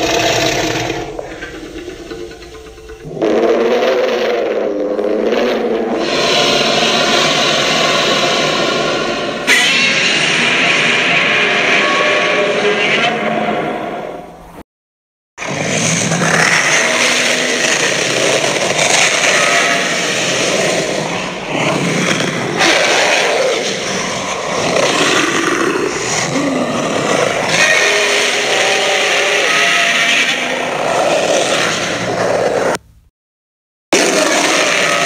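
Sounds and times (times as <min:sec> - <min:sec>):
monster growling roar: 0:00.0 - 0:09.5, 0:15.4 - 0:32.8, 0:34.0 - 0:35.0.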